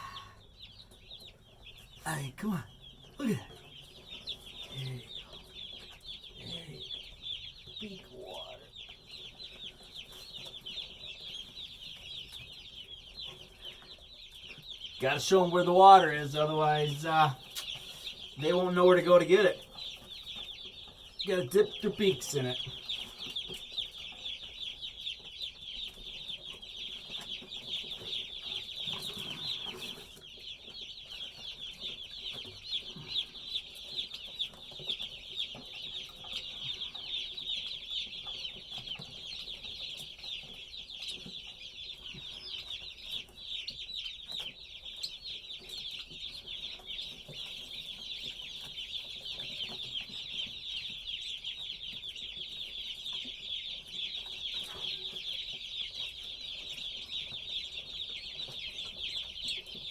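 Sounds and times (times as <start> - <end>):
chicks peeping: 0.0 - 59.9.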